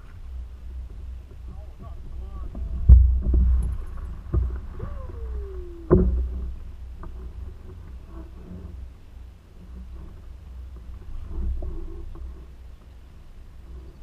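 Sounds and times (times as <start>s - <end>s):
low rumble: 0.0s - 14.0s.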